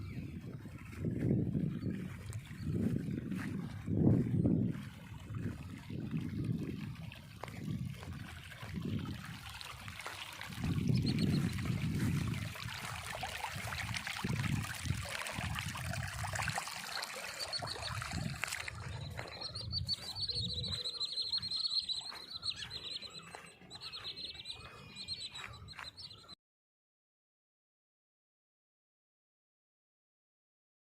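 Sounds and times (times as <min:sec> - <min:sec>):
low rumbling on microphone: 0:00.0 - 0:09.3
birds calling: 0:10.8 - 0:12.0, 0:16.0 - 0:26.4
curving whistled calls: 0:16.6 - 0:26.4.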